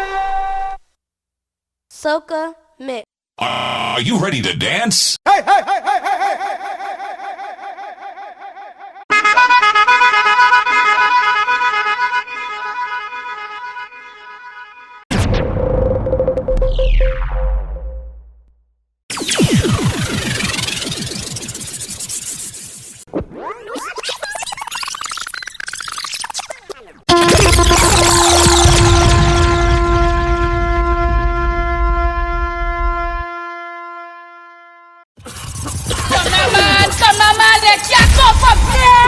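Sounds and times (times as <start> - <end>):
fast-warbling pitched tone: 19.1 - 30.0
air horn blast: 27.1 - 35.0.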